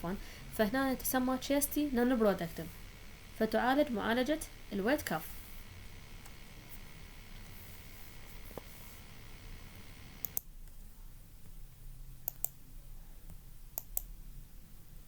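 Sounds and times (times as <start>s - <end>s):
faint room hiss: 0.0s - 15.0s
faint steady high hum: 0.0s - 15.0s
mouse clicks: 10.2s - 10.5s, 12.2s - 12.6s, 13.3s - 14.1s.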